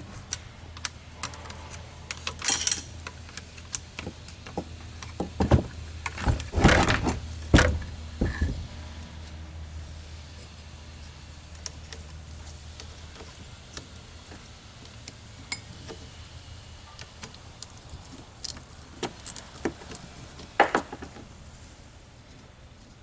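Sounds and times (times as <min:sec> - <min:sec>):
metal tools clinking: 0:01.2 - 0:03.8, 0:06.0 - 0:08.7.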